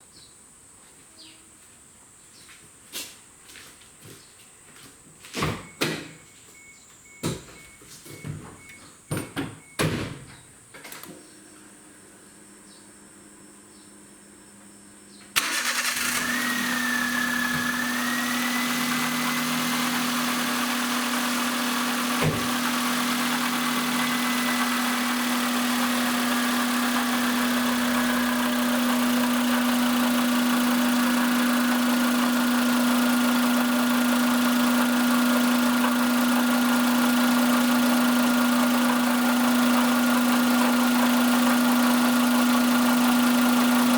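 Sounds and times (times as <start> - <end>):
engine whine: 10.9 - 43.9
car engine starting and idling: 15.3 - 43.9.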